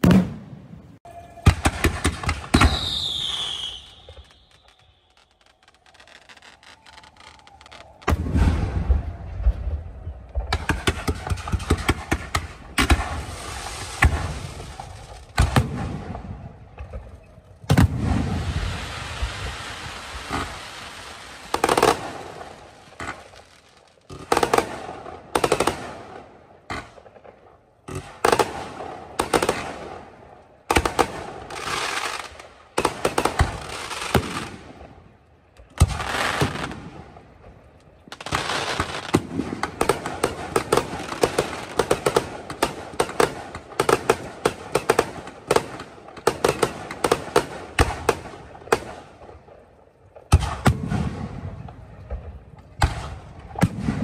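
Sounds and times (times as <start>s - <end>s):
deep fireworks boom: 0.0s - 20.7s
fireworks bangs and crackle: 0.0s - 54.0s.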